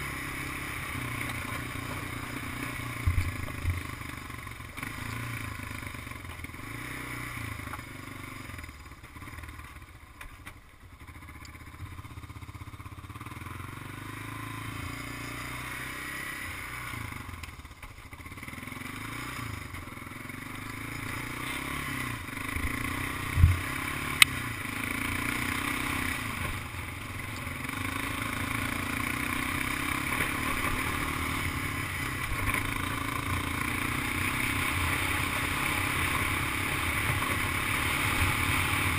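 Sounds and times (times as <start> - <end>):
atv engine revving: 0.0 - 10.0, 11.0 - 38.9
click: 24.2 - 24.4.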